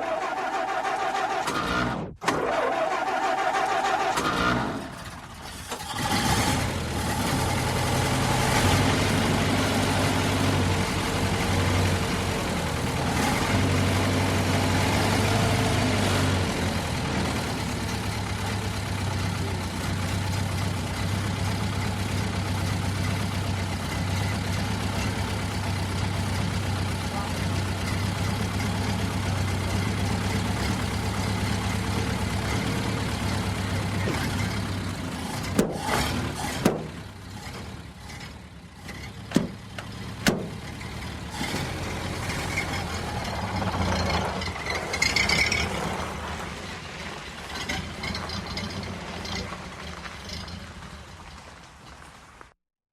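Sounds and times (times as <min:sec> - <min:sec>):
starter motor cranking engine: 0:00.0 - 0:07.7
car engine idling: 0:00.0 - 0:52.4.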